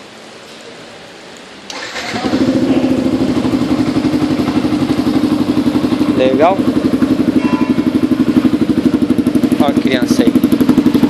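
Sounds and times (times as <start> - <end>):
steady background hiss: 0.0 - 7.2
motorcycle engine starting and idling: 1.7 - 11.0.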